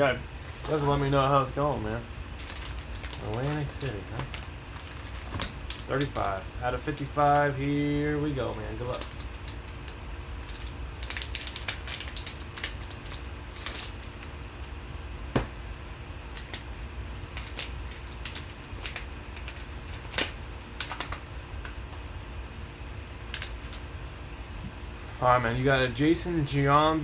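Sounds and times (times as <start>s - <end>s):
faint background hum: 0.0s - 27.0s
cards being handled: 2.4s - 7.1s
card pack being torn open: 2.4s - 7.4s, 8.5s - 14.3s, 16.4s - 21.7s, 23.3s - 23.8s.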